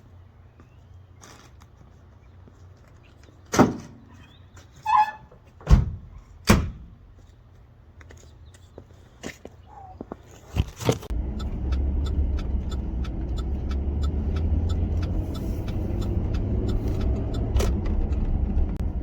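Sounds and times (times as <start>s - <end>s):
door squeak: 4.8s - 5.8s
doors thumping shut: 5.6s - 6.9s.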